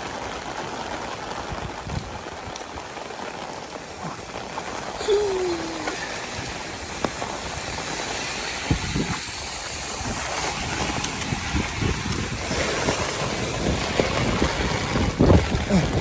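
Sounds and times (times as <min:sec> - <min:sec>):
heavy rain hissing: 0:00.0 - 0:16.0
wind buffeting microphone: 0:04.5 - 0:16.0.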